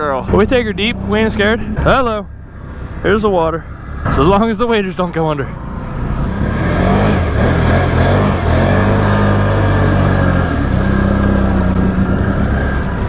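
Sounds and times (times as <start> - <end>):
atv engine revving: 5.6 - 13.0.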